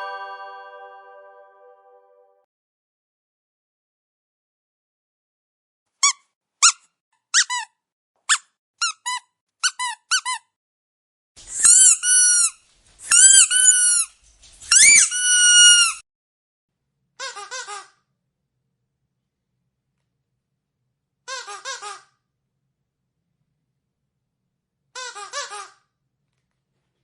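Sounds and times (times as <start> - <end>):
squeaky dog toy squeaking: 6.0 - 7.7, 8.3 - 10.5, 11.6 - 14.1, 14.7 - 16.0, 25.0 - 25.8.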